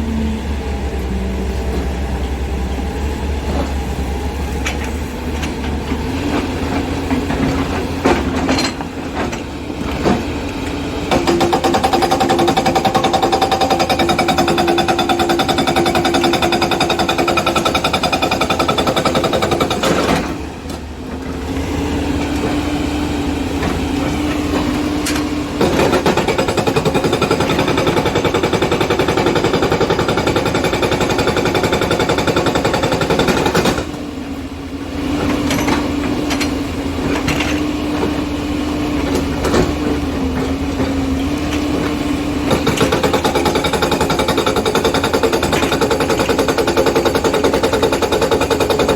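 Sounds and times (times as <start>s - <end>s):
diesel engine running: 0.0s - 48.8s
hydraulic rock breaker hammering stone: 6.3s - 20.8s, 23.5s - 34.1s, 35.2s - 48.9s.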